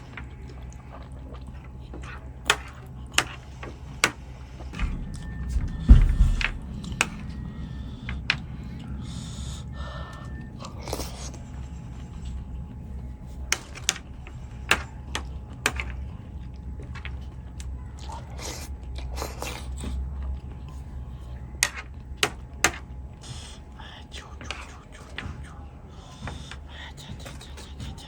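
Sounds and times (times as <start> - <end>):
steady low rumble: 3.8 - 10.6.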